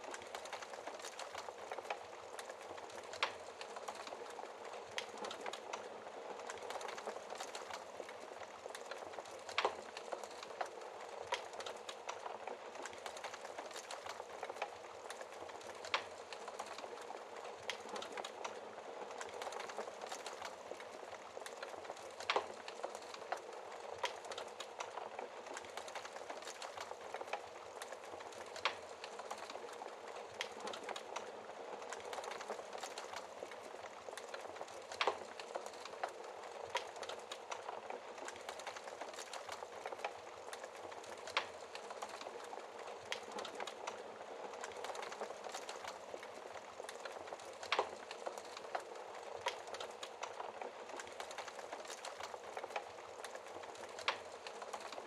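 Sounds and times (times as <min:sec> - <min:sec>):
fire popping: 0:00.0 - 0:55.0
wood fire crackling: 0:00.0 - 0:55.0.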